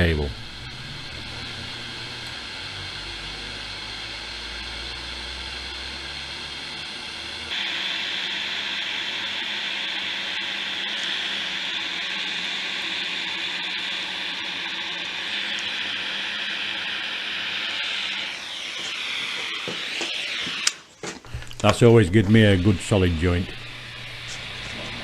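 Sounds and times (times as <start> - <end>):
soldering iron gas hiss: 0.0 - 25.0.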